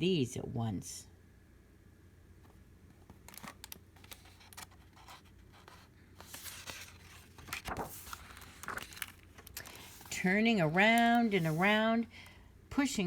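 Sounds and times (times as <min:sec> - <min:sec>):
paper rustling and clicking: 0:03.0 - 0:11.8.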